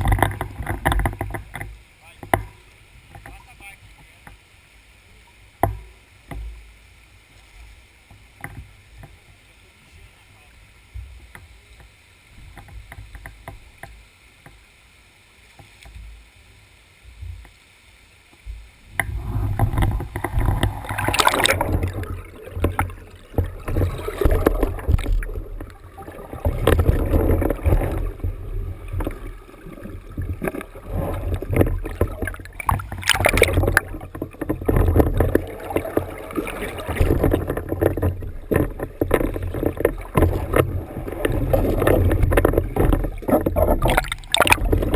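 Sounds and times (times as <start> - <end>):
mountain bike rumble: 0.0 - 1.7, 19.0 - 44.9
bike rattles and knocks: 0.0 - 3.4, 30.2 - 36.0, 36.7 - 44.9
quiet hiss: 0.0 - 44.9.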